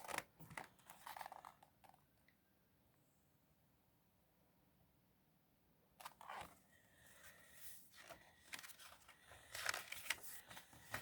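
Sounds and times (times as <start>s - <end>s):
paper rustling and crinkling: 0.0s - 2.0s, 7.2s - 11.0s.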